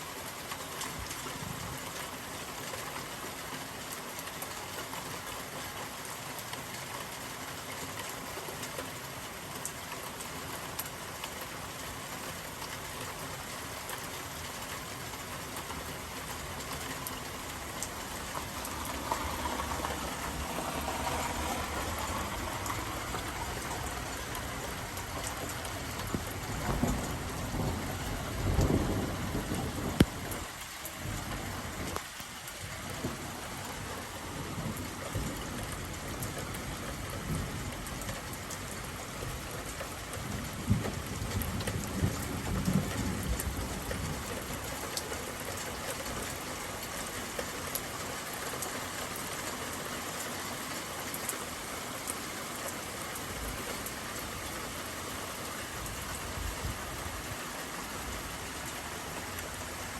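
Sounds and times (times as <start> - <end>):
steady rain falling: 0.0 - 59.9
low thunder rumbles: 18.2 - 32.0, 40.2 - 44.5.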